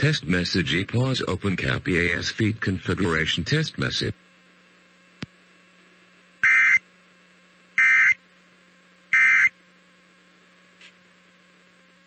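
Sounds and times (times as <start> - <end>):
faint steady hum: 0.0 - 12.0
warbling digital data tones: 6.4 - 6.8, 7.8 - 8.2, 9.2 - 9.5.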